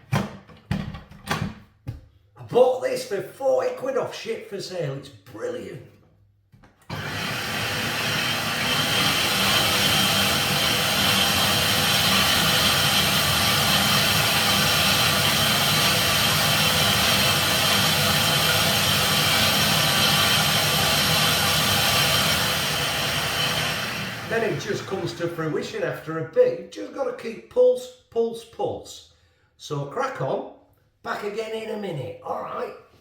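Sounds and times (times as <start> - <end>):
electric blender motor running: 6.9 - 25.1.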